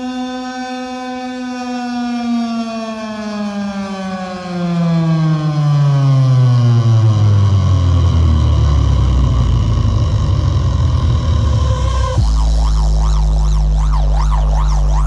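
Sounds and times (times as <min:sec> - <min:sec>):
electronic tone sliding into bass: 0:06.8 - 0:15.0.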